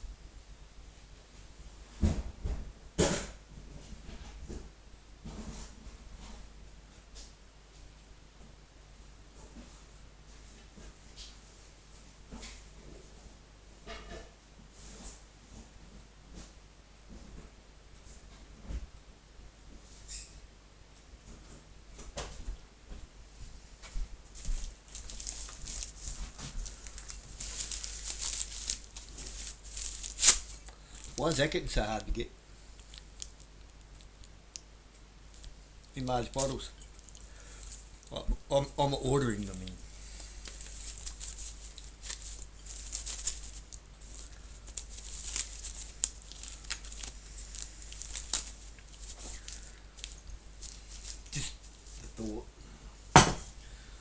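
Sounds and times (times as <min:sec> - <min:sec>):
rustling and crinkling: 0:21.1 - 0:52.4
steady low hum: 0:22.7 - 0:54.0.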